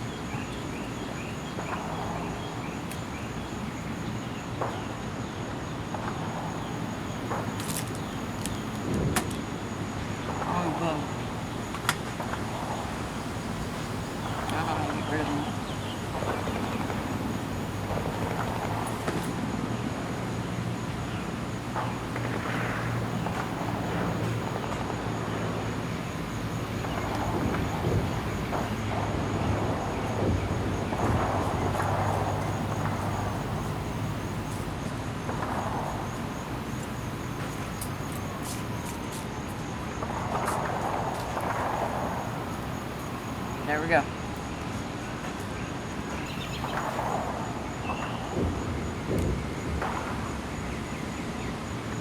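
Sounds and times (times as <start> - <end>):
outdoor background noise: 0.0 - 52.0
steady low hum: 5.9 - 45.0.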